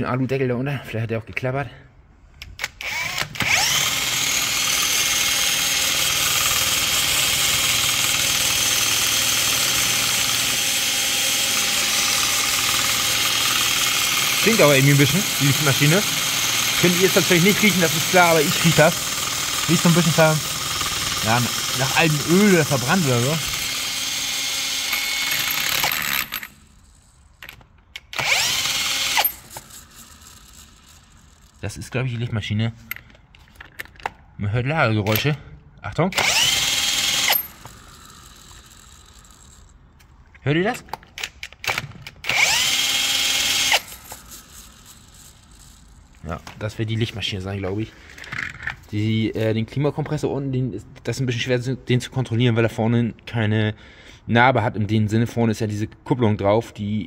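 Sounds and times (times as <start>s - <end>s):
drill clicks: 2.4s - 31.6s, 36.1s - 46.6s, 48.0s - 49.0s
drill spinning alternator whine: 2.8s - 26.7s, 27.5s - 31.7s, 36.2s - 39.7s, 42.2s - 46.6s.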